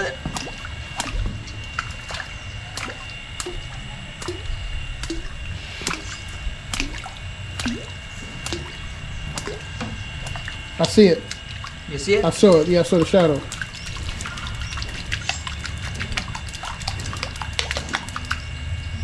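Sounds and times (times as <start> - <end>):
water dripping: 0.0 - 19.0.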